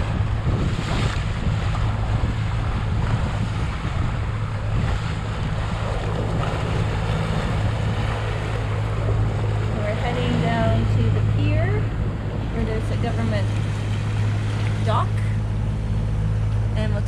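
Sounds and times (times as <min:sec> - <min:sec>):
boat engine humming: 0:00.0 - 0:17.0
water rushing past hull: 0:00.0 - 0:17.0
wind buffeting microphone: 0:00.0 - 0:17.0.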